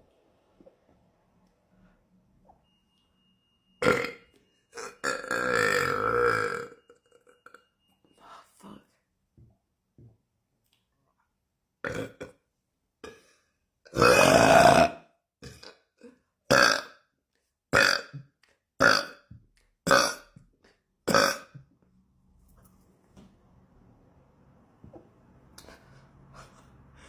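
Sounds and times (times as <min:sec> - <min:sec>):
woman burping: 0:03.8 - 0:04.2, 0:04.8 - 0:07.6, 0:11.8 - 0:12.4, 0:13.9 - 0:16.9, 0:19.9 - 0:20.3, 0:21.1 - 0:21.6.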